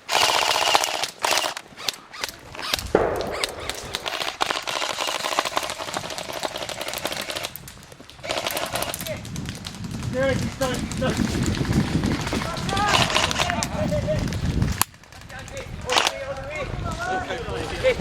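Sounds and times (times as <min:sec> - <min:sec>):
airsoft guns firing full-auto: 0:00.0 - 0:07.6, 0:15.9 - 0:16.3.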